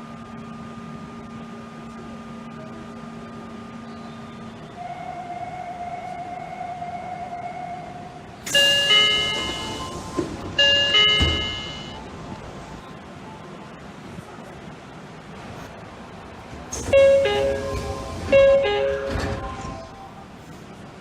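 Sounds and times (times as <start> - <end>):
two-note door chime: 8.5 - 10.0, 10.6 - 12.0.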